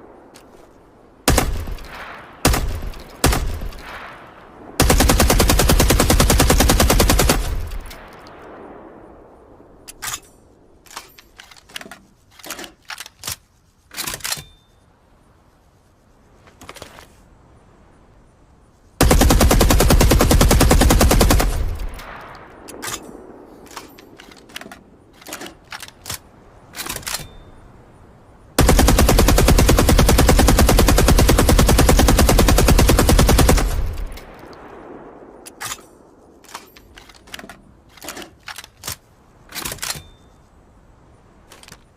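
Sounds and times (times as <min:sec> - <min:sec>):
metallic clicks and clinks: 0:35.5 - 0:40.5.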